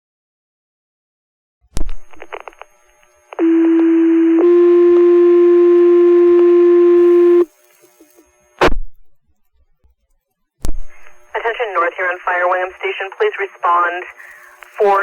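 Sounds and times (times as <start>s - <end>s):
short radio burst: 10.9s - 15.0s.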